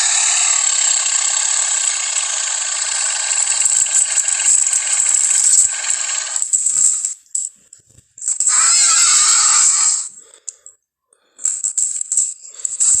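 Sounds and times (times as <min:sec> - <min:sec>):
rasping hissing monster screech: 0:08.5 - 0:10.1.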